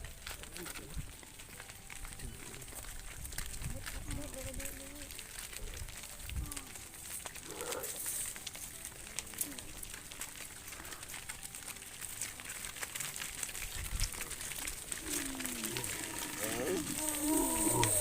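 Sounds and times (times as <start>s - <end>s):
cattle hooves clicking and rustling: 0.0s - 18.0s
faint cattle calls: 7.4s - 8.1s, 14.9s - 18.0s.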